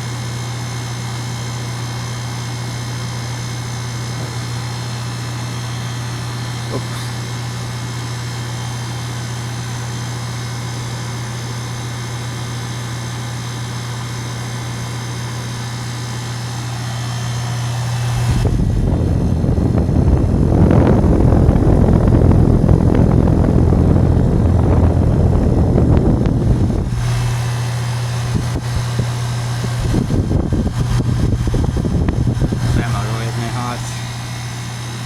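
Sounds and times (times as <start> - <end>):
heat pump low hum: 0.0 - 35.0
wind buffeting microphone: 17.8 - 33.8.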